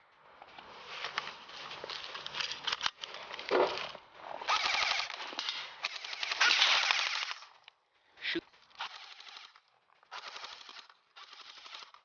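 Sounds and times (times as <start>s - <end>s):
airsoft gun rapid fire: 4.5s - 5.2s, 5.8s - 7.5s, 8.8s - 12.0s.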